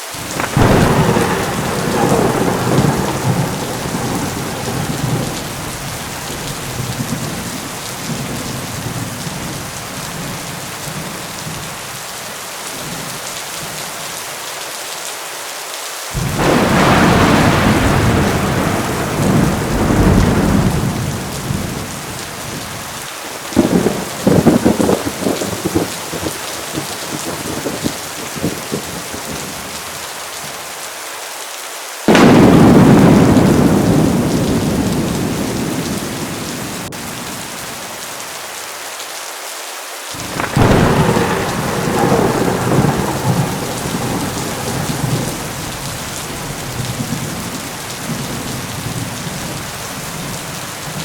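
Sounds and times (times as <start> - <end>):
heavy rain pouring: 0.0 - 51.0
thunder rumbling and clapping: 0.2 - 10.4, 16.2 - 29.8, 32.1 - 37.6, 40.2 - 51.0.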